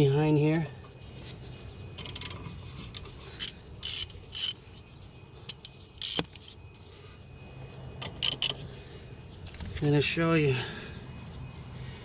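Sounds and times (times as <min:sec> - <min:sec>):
ratchet wrench clicking: 0:02.0 - 0:04.6, 0:05.5 - 0:06.5, 0:08.0 - 0:08.6.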